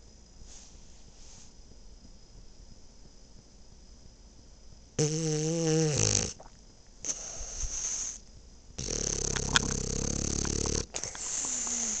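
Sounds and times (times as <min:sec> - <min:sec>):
dog snoring: 0:05.0 - 0:08.2, 0:08.8 - 0:12.0.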